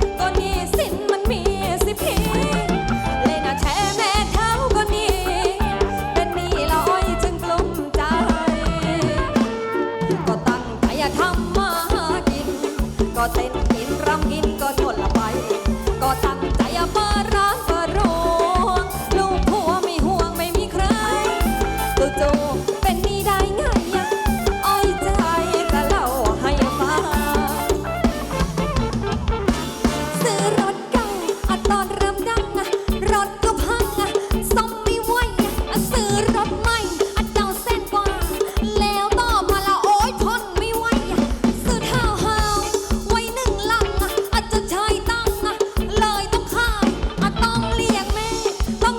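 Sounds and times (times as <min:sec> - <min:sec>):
dance band music: 0:00.0 - 0:37.1
drums keeping a beat: 0:00.0 - 0:48.9.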